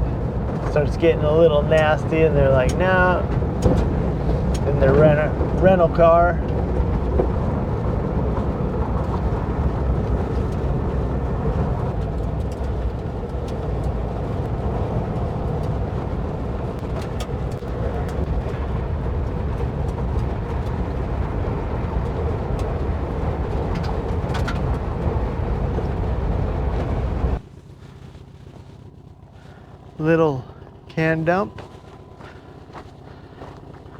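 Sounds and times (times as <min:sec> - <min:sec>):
van engine driving on dirt trail: 0:00.0 - 0:33.9
clicks and rattles: 0:06.4 - 0:27.1.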